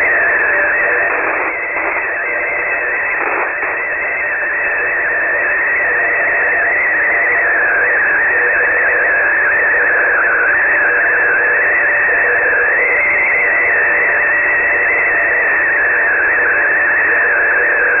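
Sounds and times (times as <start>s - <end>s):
radio static hiss: 0.0s - 4.0s
wavering high radio tone: 0.0s - 18.0s.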